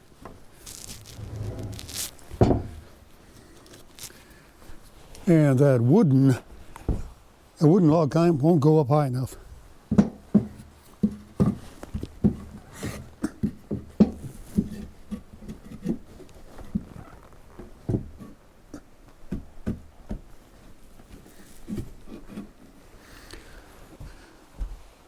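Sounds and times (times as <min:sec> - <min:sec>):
soft knocks and thumps: 0:00.2 - 0:03.0, 0:06.8 - 0:07.2, 0:09.9 - 0:22.0.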